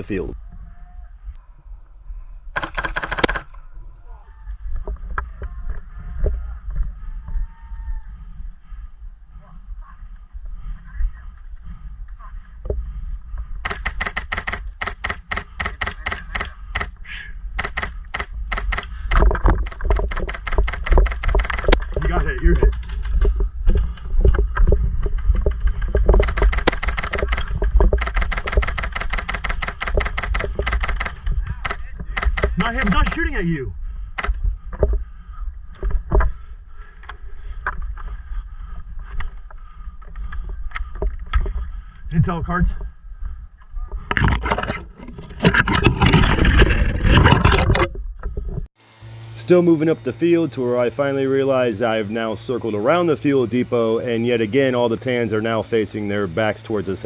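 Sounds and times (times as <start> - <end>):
wind on camera microphone: 29.5 - 33.1.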